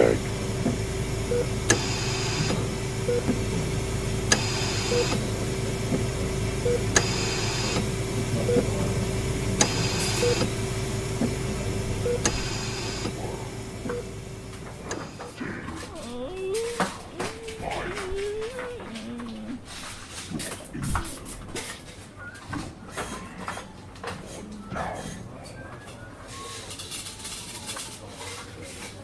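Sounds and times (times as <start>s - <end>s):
monitor beeping: 0.0s - 15.4s
low machine hum: 0.0s - 21.5s.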